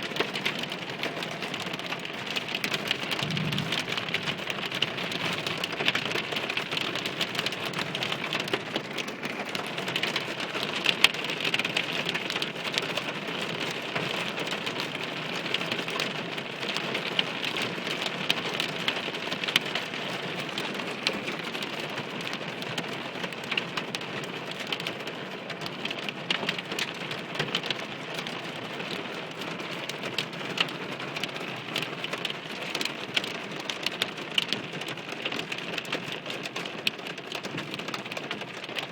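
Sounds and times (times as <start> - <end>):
hailstones ticking: 0.1 - 38.9
heavy rain hissing: 3.1 - 5.5.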